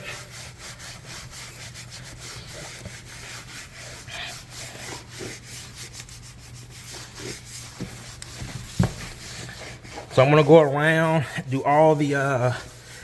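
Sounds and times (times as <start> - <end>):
towel rubbing on wooden floor: 0.0 - 13.0.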